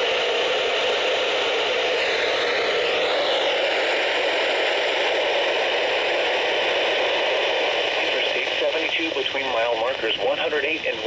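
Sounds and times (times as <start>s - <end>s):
radio static hiss: 5.0s - 11.0s.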